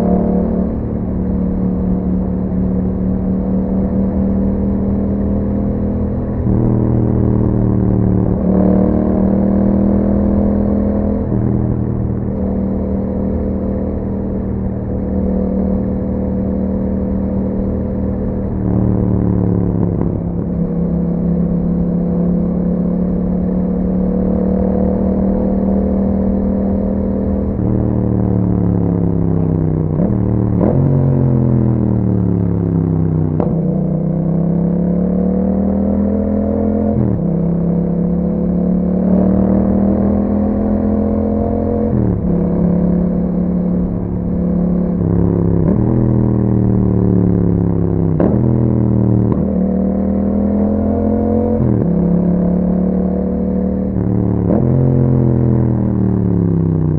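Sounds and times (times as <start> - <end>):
motorcycle engine revving: 0.0 - 56.9.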